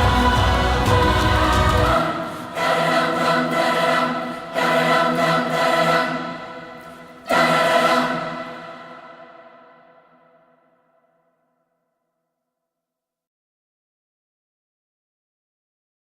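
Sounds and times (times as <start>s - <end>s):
choir singing sustained chords: 0.0s - 11.0s.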